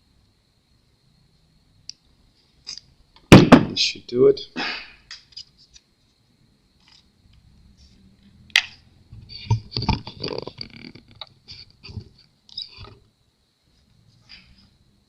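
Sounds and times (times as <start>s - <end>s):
small knocks and scrapes: 9.2s - 13.1s.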